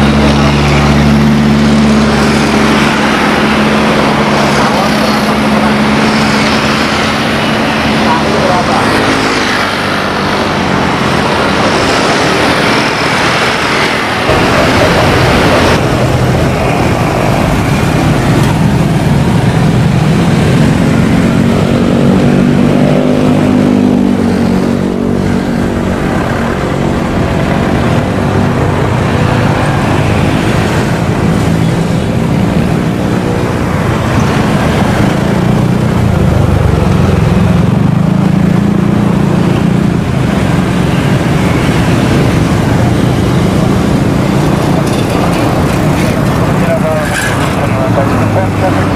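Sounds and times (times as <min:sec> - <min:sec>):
light aircraft engine droning: 0:00.0 - 0:22.5
loud rushing noise: 0:00.0 - 0:48.9.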